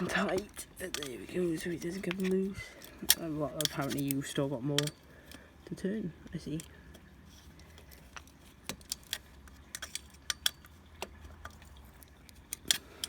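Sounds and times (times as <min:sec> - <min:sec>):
low steady hum: 0:00.0 - 0:13.0
hand tool clicking on bolt: 0:00.3 - 0:05.4.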